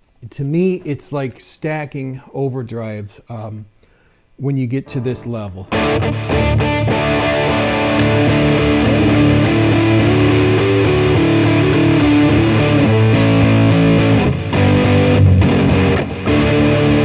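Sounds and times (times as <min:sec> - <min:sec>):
overdriven electric guitar: 0:04.9 - 0:17.0.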